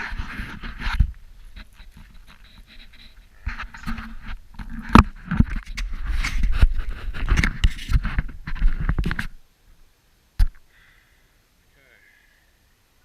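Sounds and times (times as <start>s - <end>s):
irregular scraping: 0.0s - 9.4s.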